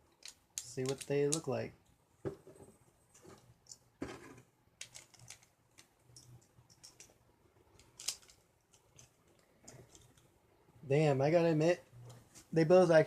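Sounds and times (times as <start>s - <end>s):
plastic parts clicking together: 0.1s - 1.4s, 4.8s - 10.3s.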